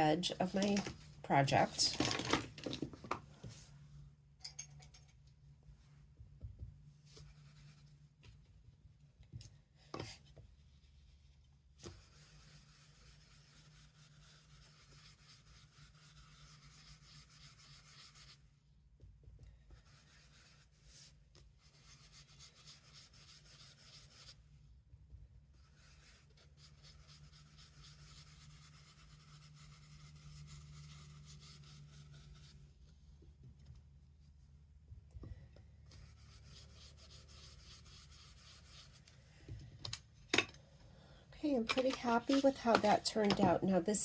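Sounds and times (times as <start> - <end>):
brush rubbing on paper: 12.0 - 18.4, 19.8 - 24.4, 25.6 - 33.0, 35.9 - 39.0.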